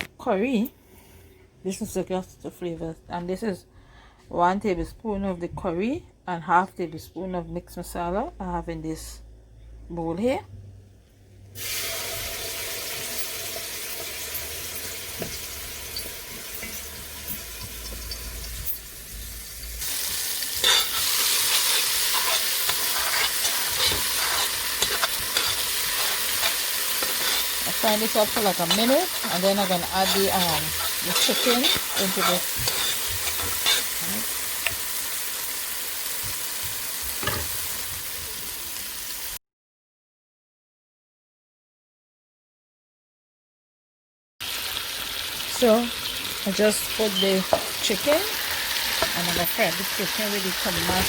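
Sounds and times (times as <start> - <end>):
food sizzling in hot oil: 11.6 - 39.4, 44.4 - 51.0.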